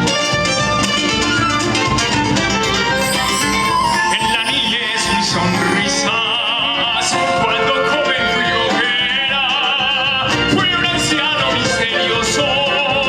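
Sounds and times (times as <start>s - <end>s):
folk band music: 0.0s - 13.0s
high wavering melody with vibrato: 2.6s - 7.4s.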